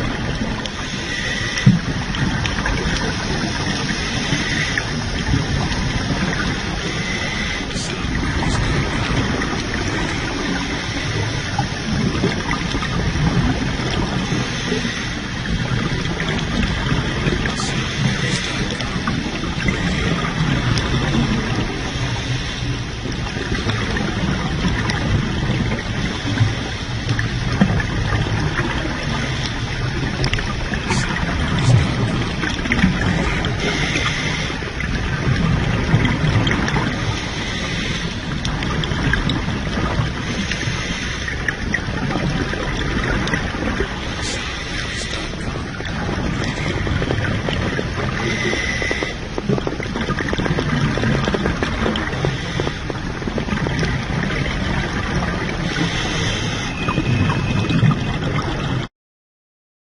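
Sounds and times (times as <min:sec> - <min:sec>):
bubbling: 0:00.0 - 0:58.9
underwater rush of water: 0:00.0 - 0:58.9
diver breathing through regulator: 0:00.6 - 0:02.2, 0:06.6 - 0:11.9, 0:14.0 - 0:15.4, 0:16.4 - 0:20.7, 0:30.6 - 0:34.8, 0:36.9 - 0:38.4, 0:40.2 - 0:41.4, 0:44.0 - 0:49.8, 0:51.0 - 0:53.4, 0:55.6 - 0:57.0.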